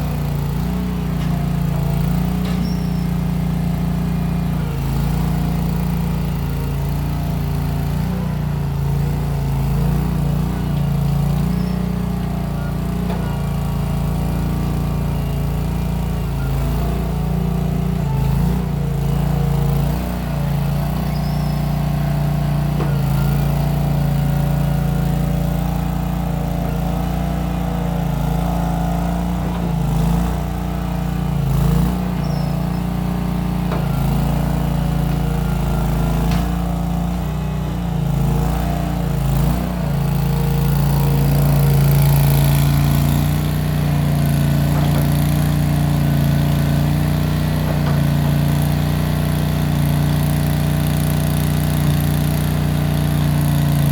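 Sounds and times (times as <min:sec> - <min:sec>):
skid steer engine running: 0:00.0 - 0:53.9.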